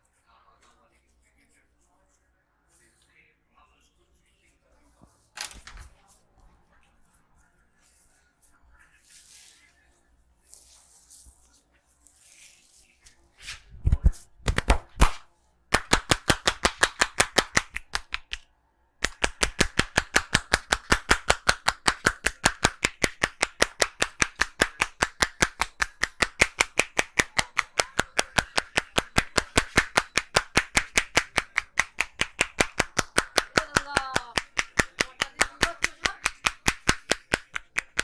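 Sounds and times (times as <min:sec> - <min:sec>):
hands tapping rapidly on head: 0:13.8 - 0:18.4, 0:19.0 - 0:38.0
heavy hand slaps: 0:13.9 - 0:15.2.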